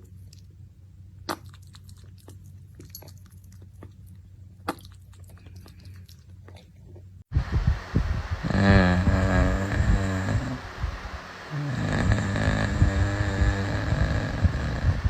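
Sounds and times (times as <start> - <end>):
chewing crunches and clicks: 0.0 - 7.2
low steady hum: 0.0 - 15.0.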